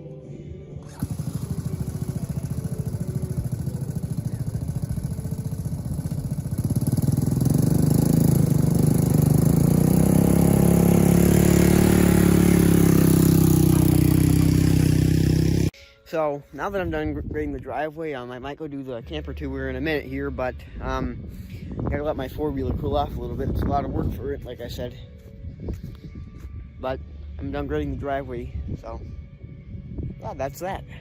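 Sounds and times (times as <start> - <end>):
quad bike engine: 0.8 - 15.8.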